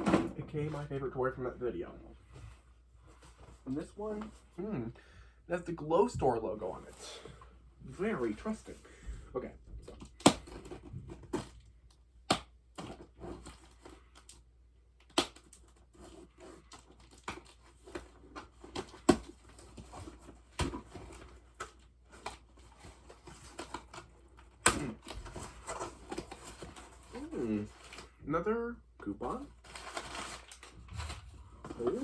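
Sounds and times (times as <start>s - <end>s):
packaging crinkling: 29.6s - 32.0s.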